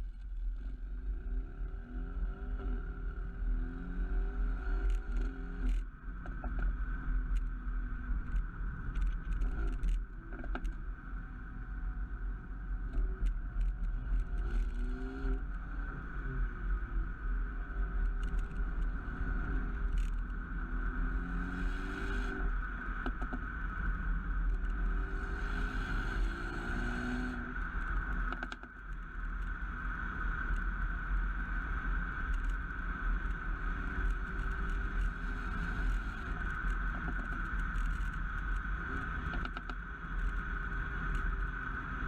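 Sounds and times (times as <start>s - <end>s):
car engine revving while driving: 0.6s - 5.8s, 12.9s - 28.6s.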